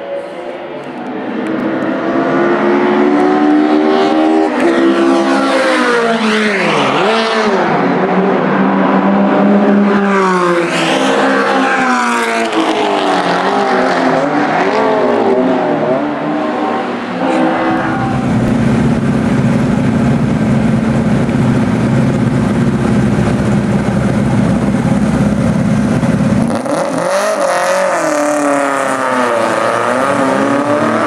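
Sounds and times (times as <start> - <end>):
racing car engines passing: 0.0 - 31.0.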